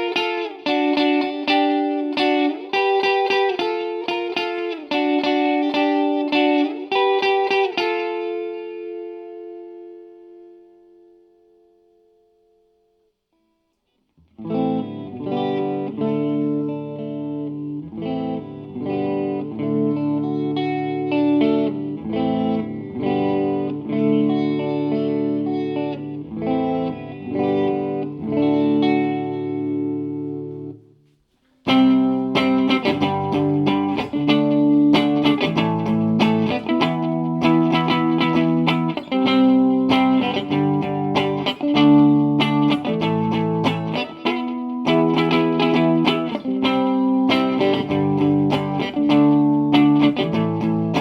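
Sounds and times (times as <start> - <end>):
fast guitar strumming: 31.7 - 51.0.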